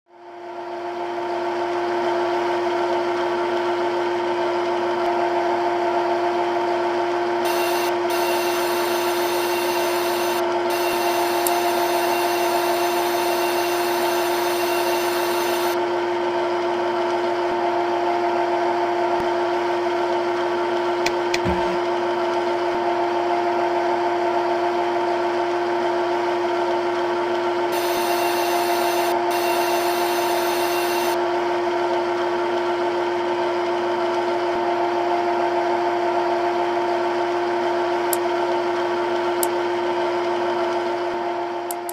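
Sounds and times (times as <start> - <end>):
noisy metal cutting: 7.4 - 15.8, 27.7 - 31.2
machine humming: 7.4 - 16.0, 27.7 - 31.3
brief knock: 21.3 - 21.8.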